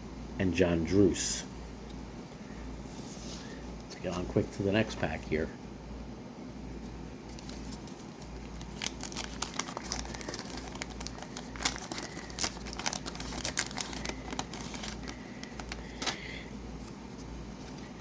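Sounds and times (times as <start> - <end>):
wax-paper wrapper crinkling: 7.3 - 18.0.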